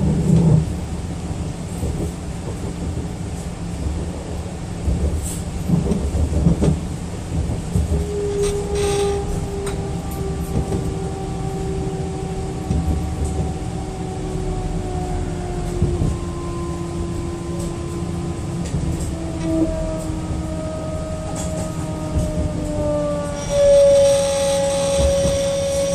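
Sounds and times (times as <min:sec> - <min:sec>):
electric train rumble: 0:00.0 - 0:25.9
high squealing tones: 0:08.0 - 0:10.4, 0:23.2 - 0:25.9.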